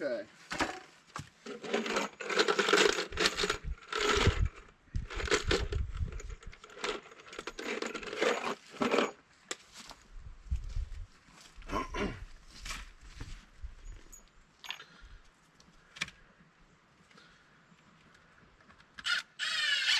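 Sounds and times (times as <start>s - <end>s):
lumber clattering and scraping: 0.4s - 10.0s.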